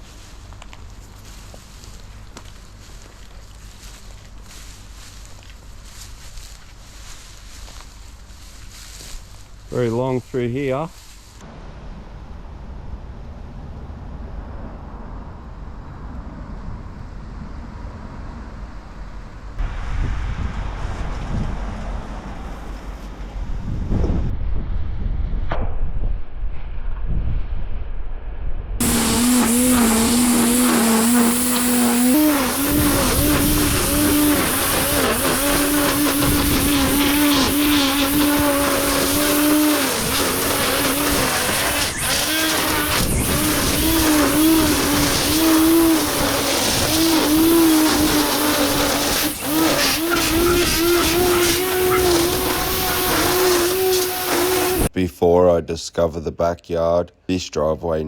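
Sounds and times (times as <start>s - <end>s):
petrol lawn mower engine running: 0.0s - 9.7s, 28.8s - 54.9s.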